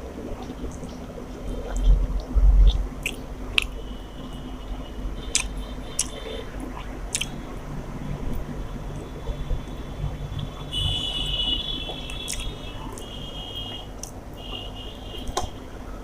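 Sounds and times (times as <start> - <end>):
wet squishing chewing: 0.3 - 3.8, 5.2 - 7.4, 11.8 - 13.1.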